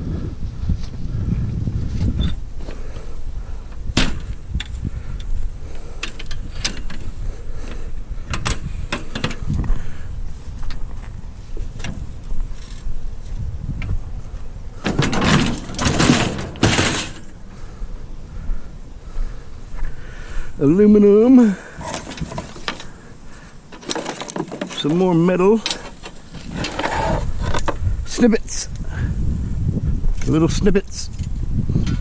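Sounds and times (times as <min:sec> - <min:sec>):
scrap metal clanking: 0:14.8 - 0:17.3, 0:21.7 - 0:23.0, 0:23.7 - 0:27.7.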